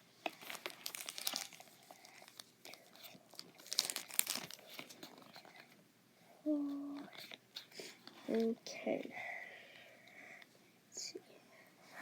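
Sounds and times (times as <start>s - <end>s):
foil wrapper crinkling: 0.3s - 5.6s.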